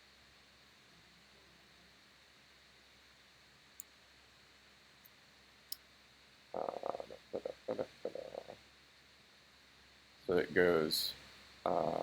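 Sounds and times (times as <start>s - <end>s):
man mumbling: 6.6s - 8.6s, 11.7s - 12.0s.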